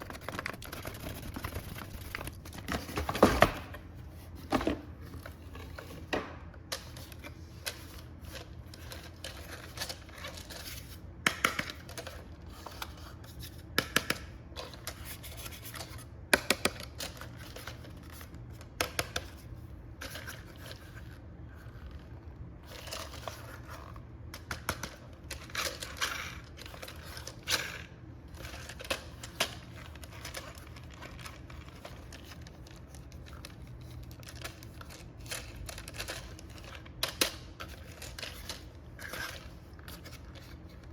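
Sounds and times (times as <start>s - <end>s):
packaging crinkling and tearing: 0.0s - 3.0s.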